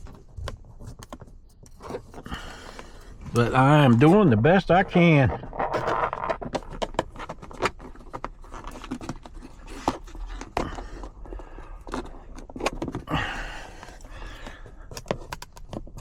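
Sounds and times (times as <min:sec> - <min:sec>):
man breathing heavily: 0:02.2 - 0:03.4, 0:10.6 - 0:12.0, 0:13.1 - 0:15.0
plastic trim clicks and scrapes: 0:14.9 - 0:16.0.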